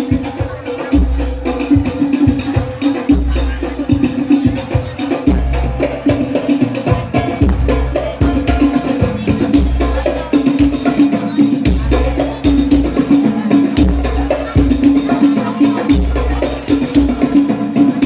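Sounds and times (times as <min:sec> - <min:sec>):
frame drum and tambourine strokes: 0:00.0 - 0:18.0
deep pulsing bass beat: 0:04.7 - 0:18.0.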